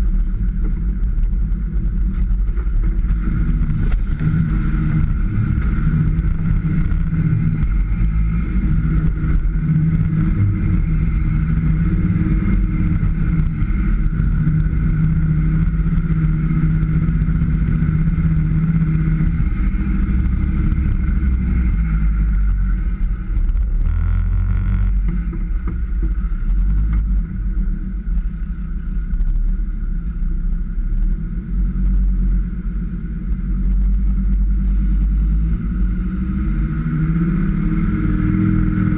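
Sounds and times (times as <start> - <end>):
engine running under load: 0.0 - 38.9
steady whine: 0.0 - 38.9.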